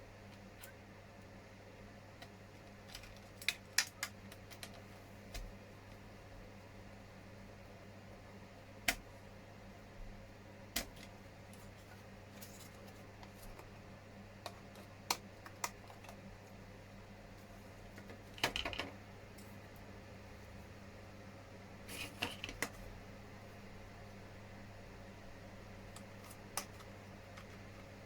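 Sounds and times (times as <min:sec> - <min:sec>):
plastic parts clicking: 0:18.0 - 0:18.9.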